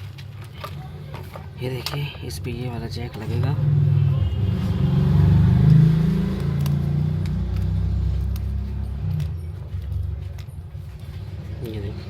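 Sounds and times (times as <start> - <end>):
vehicle engine running: 3.1 - 11.9.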